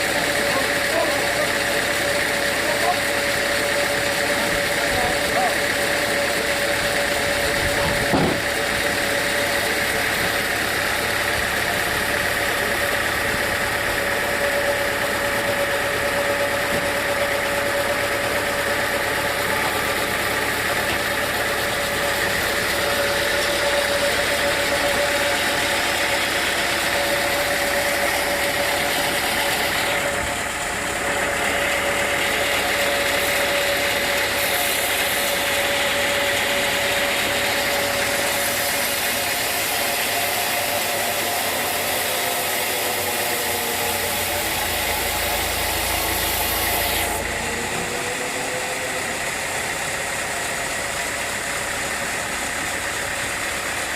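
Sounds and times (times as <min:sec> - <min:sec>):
sawmill machinery humming and whining: 0:00.0 - 0:53.9
brief knock: 0:08.1 - 0:08.5.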